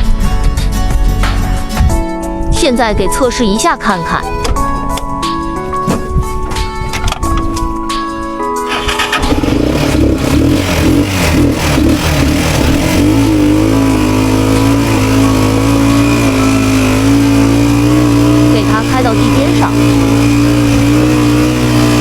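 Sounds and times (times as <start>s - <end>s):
motor tricycle engine revving: 8.7s - 22.0s.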